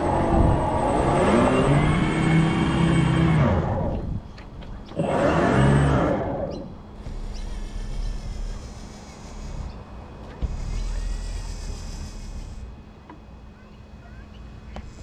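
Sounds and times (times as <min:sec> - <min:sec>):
toy boat motor whine: 0:00.0 - 0:04.0, 0:04.9 - 0:09.8, 0:10.4 - 0:12.7.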